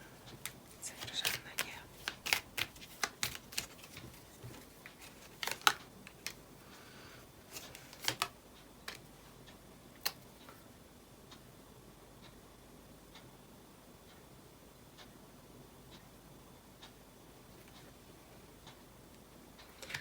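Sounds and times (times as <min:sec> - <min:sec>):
cards clicking and slapping on table: 0:00.4 - 0:06.4, 0:07.5 - 0:08.3.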